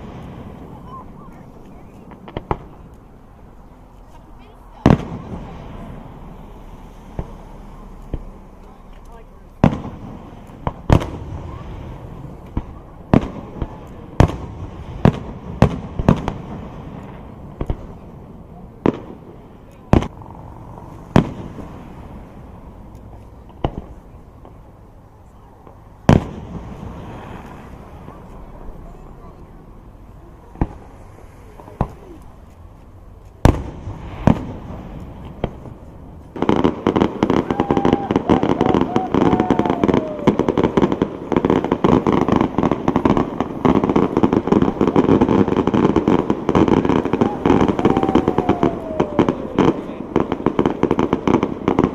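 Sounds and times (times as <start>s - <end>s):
rapid crackling pops: 0.0s - 3.2s, 7.1s - 24.7s
fireworks bangs: 0.0s - 51.9s
low background noise: 0.0s - 51.9s.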